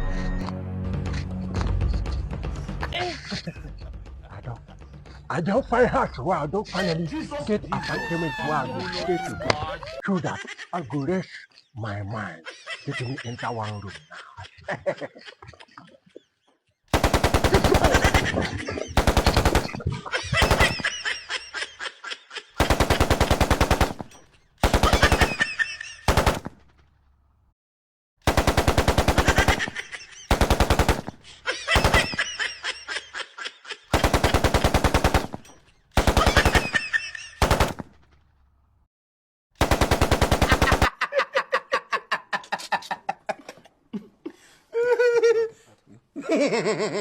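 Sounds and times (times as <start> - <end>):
machine-gun fire: 16.9 - 21.1, 22.6 - 26.7, 28.3 - 32.4, 33.9 - 38.0, 39.6 - 40.9.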